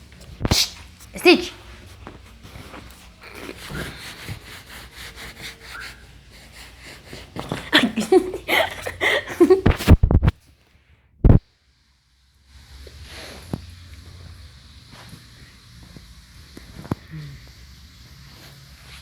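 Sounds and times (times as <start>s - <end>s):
rustling and handling noise: 0.0s - 11.4s.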